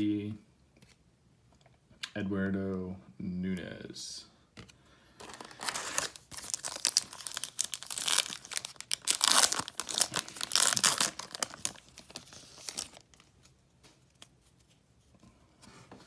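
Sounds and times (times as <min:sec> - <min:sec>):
foil wrapper crinkling and tearing: 0:05.2 - 0:13.2.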